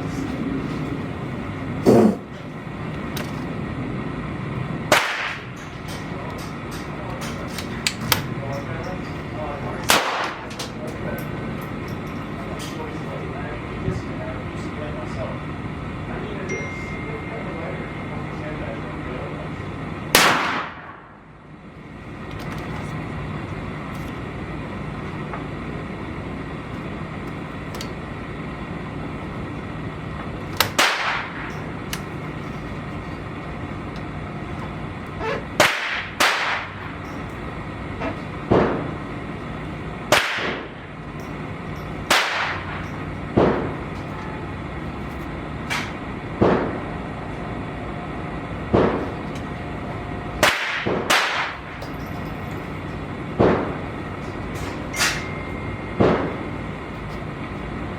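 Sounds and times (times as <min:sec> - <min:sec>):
gunshots: 0:20.2 - 0:21.0.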